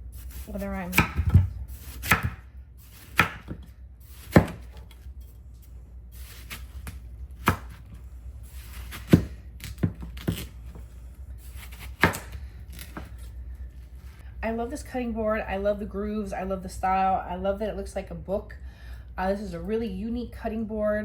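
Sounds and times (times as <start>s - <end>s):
knife chopping on wooden board: 0.9s - 4.9s, 6.2s - 7.8s, 8.6s - 10.8s, 11.6s - 13.1s.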